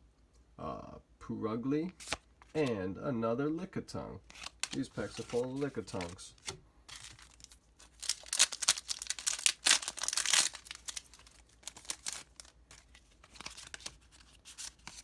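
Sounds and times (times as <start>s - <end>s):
foil wrapper tearing and crinkling: 6.9s - 15.0s.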